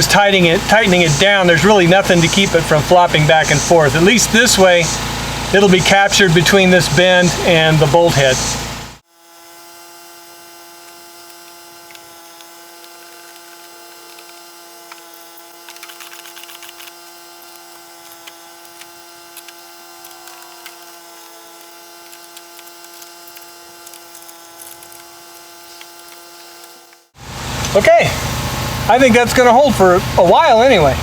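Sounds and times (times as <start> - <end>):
small parts clicking and tapping: 10.8 - 27.1.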